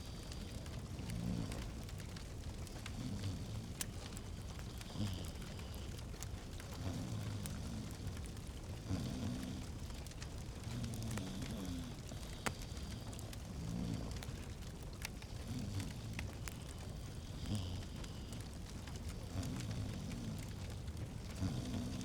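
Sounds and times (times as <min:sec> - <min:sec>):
wood fire crackling: 0:00.0 - 0:22.0.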